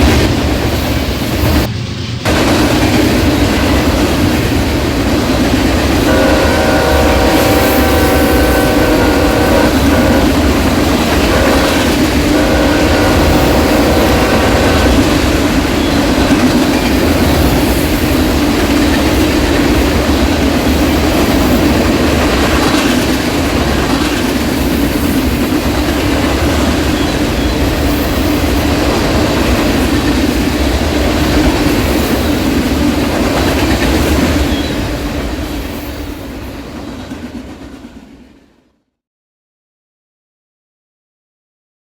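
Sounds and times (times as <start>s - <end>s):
train cars rumbling and clattering: 0.0s - 38.4s
locomotive horn: 6.0s - 16.3s.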